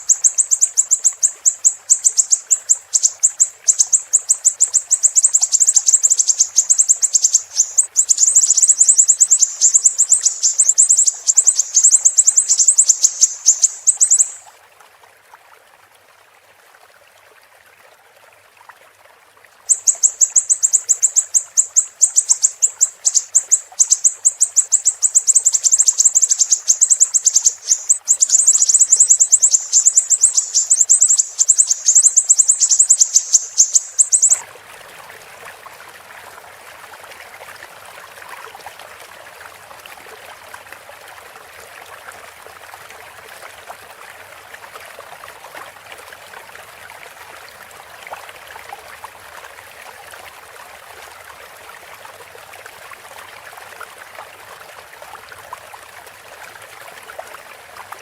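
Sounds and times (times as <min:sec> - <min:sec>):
bird chirping rapidly: 0:00.0 - 0:14.4, 0:19.7 - 0:34.4
faint steady hiss: 0:00.0 - 0:17.6, 0:18.2 - 0:58.0.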